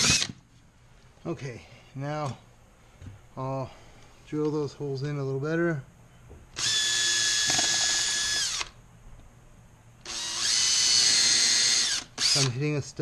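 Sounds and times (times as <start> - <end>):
cordless drill whining into wall: 0.0 - 0.4, 6.6 - 8.8, 10.0 - 12.6.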